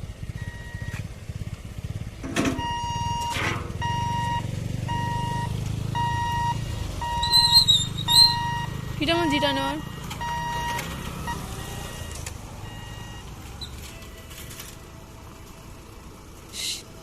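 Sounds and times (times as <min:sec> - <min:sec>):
vehicle engines idling: 0:00.0 - 0:17.0
level crossing warning beeps: 0:00.3 - 0:01.0, 0:02.5 - 0:14.3
high chirps: 0:07.1 - 0:08.7.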